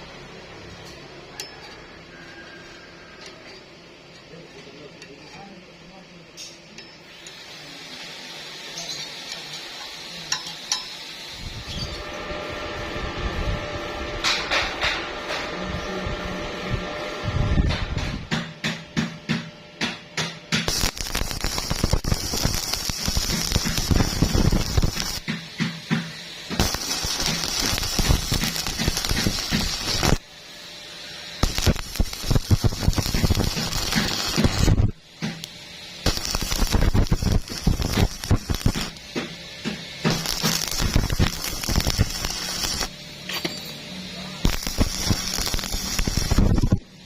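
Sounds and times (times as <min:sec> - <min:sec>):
welding arc crackling: 0:07.1 - 0:15.0, 0:20.2 - 0:47.0.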